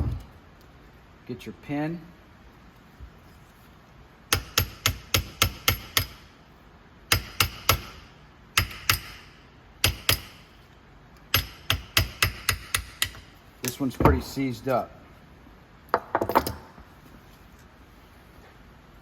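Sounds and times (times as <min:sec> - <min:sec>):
hammer tapping metal: 0:04.3 - 0:06.2, 0:08.6 - 0:09.2, 0:09.8 - 0:10.4, 0:11.3 - 0:13.3.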